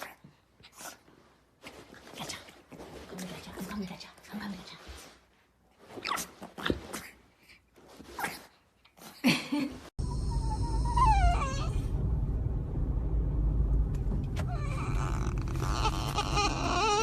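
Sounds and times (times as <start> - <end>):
dog whining: 10.0 - 11.9, 14.4 - 17.0
low engine and road rumble: 10.0 - 16.8.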